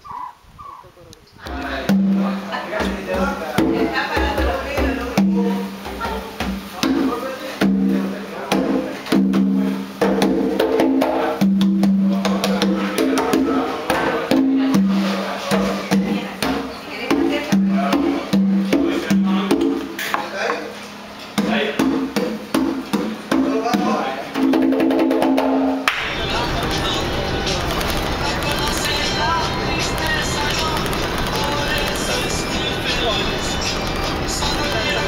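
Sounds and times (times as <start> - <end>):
melodic music with wood-block percussion: 1.5 - 20.0.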